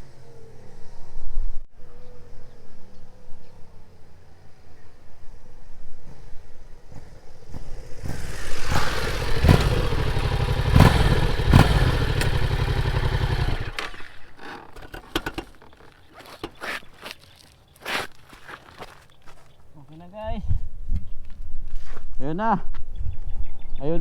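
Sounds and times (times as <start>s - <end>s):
motorcycle riding past: 6.0s - 14.4s.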